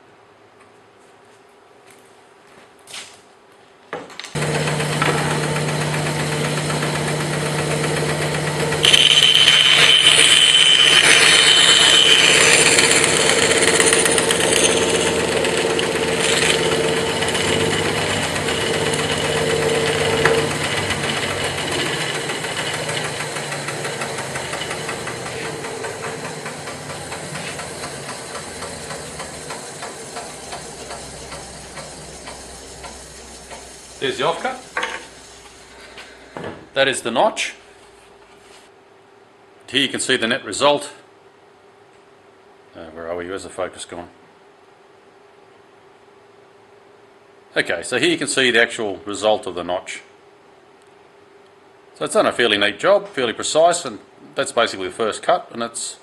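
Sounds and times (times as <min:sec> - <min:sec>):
bandsaw cutting timber: 0:04.4 - 0:36.2.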